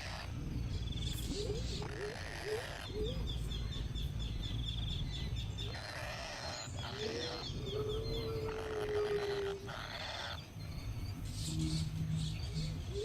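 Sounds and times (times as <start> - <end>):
baby birds chirping: 4.4 - 13.0
low rising bird calls: 5.0 - 13.0.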